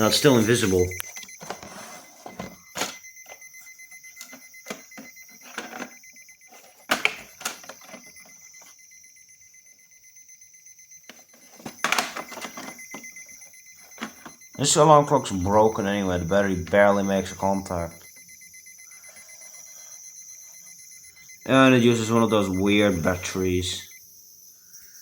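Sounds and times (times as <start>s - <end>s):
alarm clock beeping: 0.0s - 25.0s
clicks and knocks of handling: 6.6s - 8.4s.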